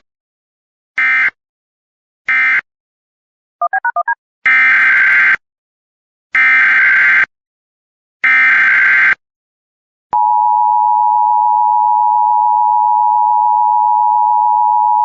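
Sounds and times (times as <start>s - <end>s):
two-pitch keypad beeps: 3.6s - 4.2s, 10.2s - 15.0s.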